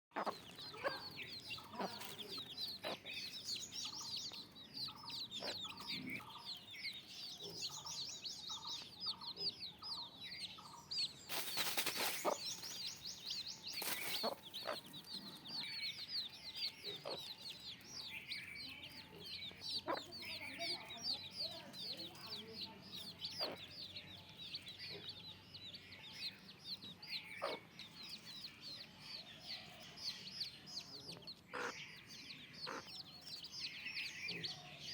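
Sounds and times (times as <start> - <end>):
chickens clucking: 0.1 - 22.4, 23.0 - 23.7, 26.8 - 28.3, 31.1 - 31.8, 32.6 - 33.6
high-pitched peeps and chirps: 0.1 - 34.9.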